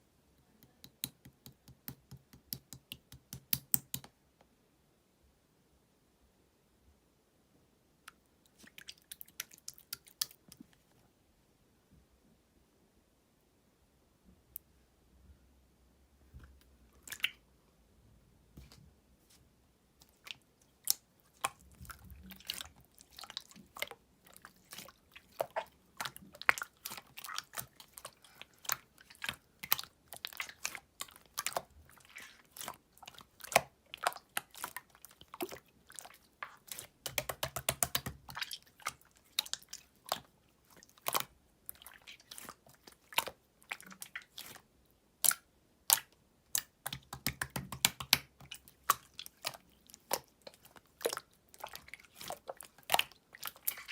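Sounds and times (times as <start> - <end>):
slime crackling rapidly: 24.6 - 38.5.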